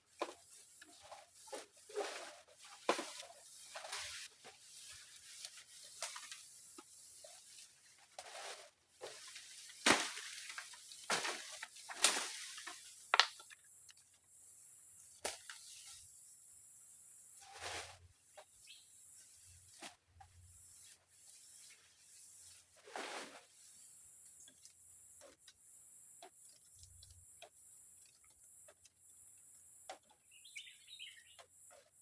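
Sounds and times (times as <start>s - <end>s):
steady high hiss: 0.0s - 32.0s
rustling: 0.1s - 14.0s, 17.4s - 18.2s, 19.1s - 23.9s
sharp knocks and cracks: 9.8s - 13.6s.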